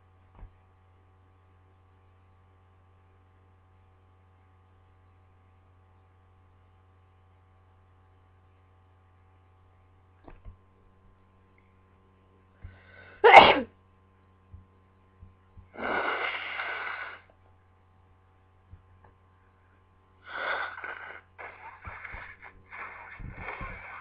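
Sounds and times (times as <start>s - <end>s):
person sneezing: 13.2s - 13.7s, 20.3s - 24.0s
breathy exhale: 20.2s - 24.0s
short choppy breaths: 20.3s - 24.0s.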